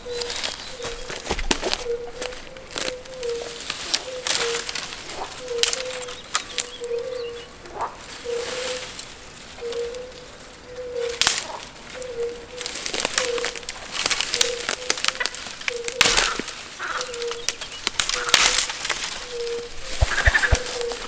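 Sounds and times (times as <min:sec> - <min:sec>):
sharp crackles and rustles: 0:00.0 - 0:06.9, 0:11.1 - 0:21.0
bird cooing: 0:00.0 - 0:07.6, 0:08.2 - 0:08.8, 0:09.6 - 0:13.6, 0:14.3 - 0:21.0.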